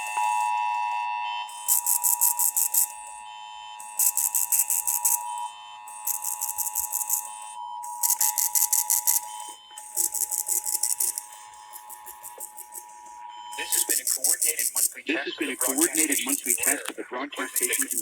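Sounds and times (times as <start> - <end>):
high-pitched pulsed buzz: 1.5 - 18.0
two-tone alert signal: 3.8 - 18.0.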